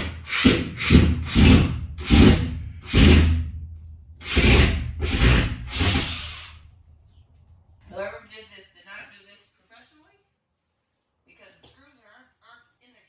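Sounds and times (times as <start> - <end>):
rough scraping strokes: 0.0 - 3.5, 4.2 - 6.8
dull low thuds: 0.0 - 7.8.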